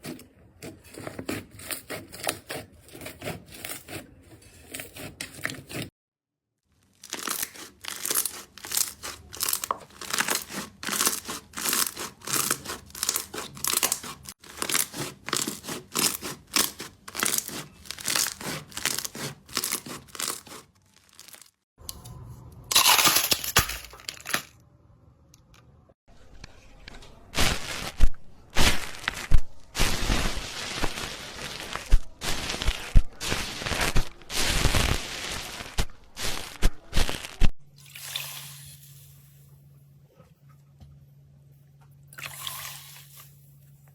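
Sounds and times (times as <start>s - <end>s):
crunchy slime crackling: 6.8s - 21.6s, 27.4s - 37.5s.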